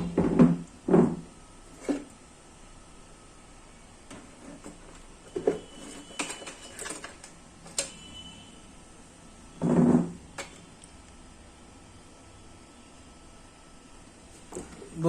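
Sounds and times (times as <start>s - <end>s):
objects clicking and knocking: 4.1s - 8.0s.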